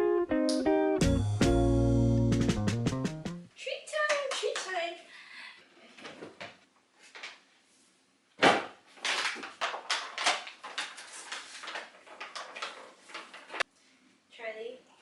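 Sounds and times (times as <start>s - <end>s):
clicking and rustling of treats: 9.0s - 13.6s.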